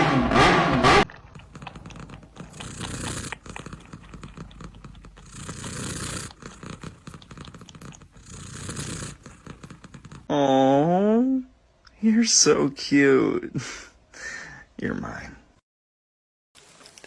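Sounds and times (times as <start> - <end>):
cat purring: 1.3 - 10.3.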